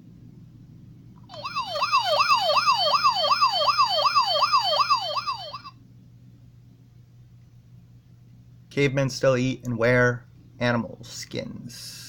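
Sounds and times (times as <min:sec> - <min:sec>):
electronic siren yelping: 0:01.2 - 0:05.7.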